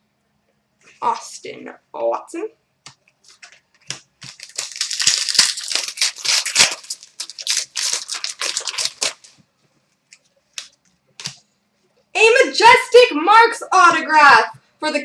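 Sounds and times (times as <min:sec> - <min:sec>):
wrapper crinkling and tearing: 0:03.3 - 0:09.4.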